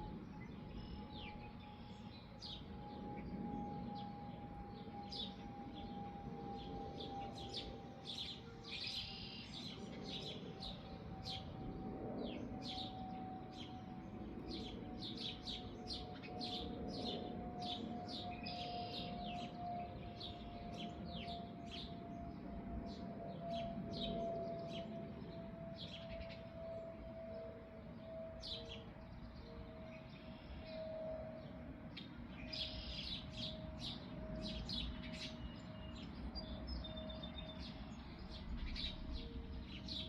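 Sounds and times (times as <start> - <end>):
faint steady tone: 17.0 - 40.0.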